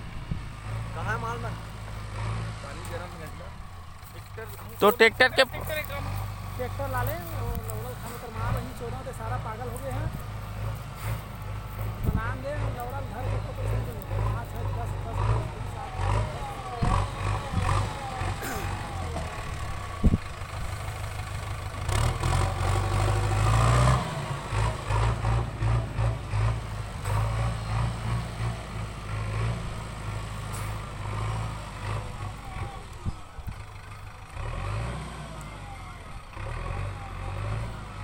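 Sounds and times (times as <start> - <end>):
heavy diesel engine revving: 0.1 - 38.0.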